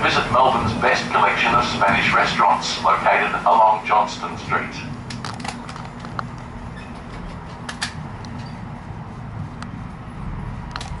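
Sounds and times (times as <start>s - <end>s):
tram interior rumble: 0.0s - 11.0s
car body clicks and creaks: 5.1s - 8.5s, 10.7s - 11.0s.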